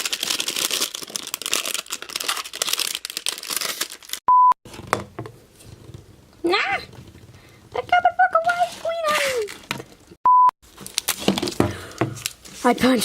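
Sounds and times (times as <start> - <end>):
plastic toy parts rustling: 0.0 - 13.0
short steady beep: 4.3 - 4.6, 10.3 - 10.5.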